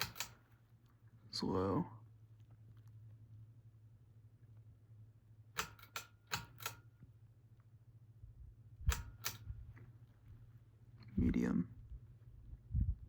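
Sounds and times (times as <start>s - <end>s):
sharp metallic clicks: 0.0s - 0.5s, 5.6s - 7.0s, 8.9s - 9.6s
ceiling fan motor hum: 0.0s - 13.0s.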